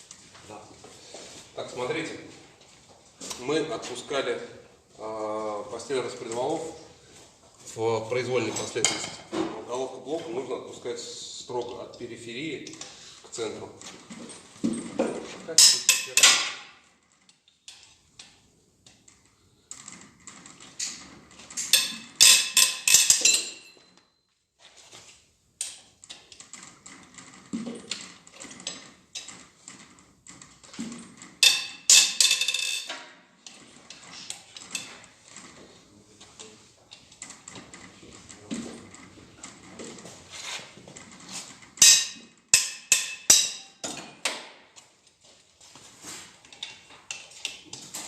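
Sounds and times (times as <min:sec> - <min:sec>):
metal tool clinks: 0:21.7 - 0:24.3.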